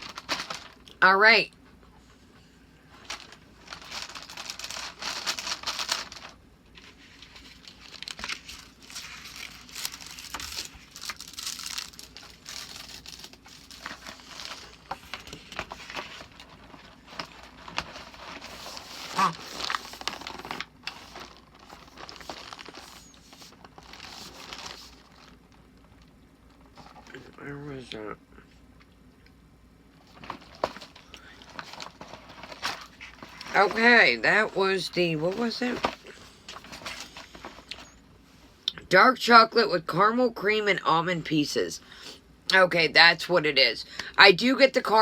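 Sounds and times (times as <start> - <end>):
packaging crinkling: 0.0 - 1.0, 2.9 - 27.4, 30.0 - 38.0.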